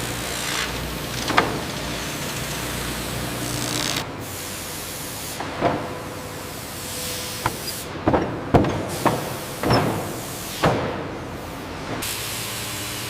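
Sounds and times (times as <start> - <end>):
sawmill machinery running: 0.0 - 13.0
lumber knocks and clunks: 7.4 - 11.1.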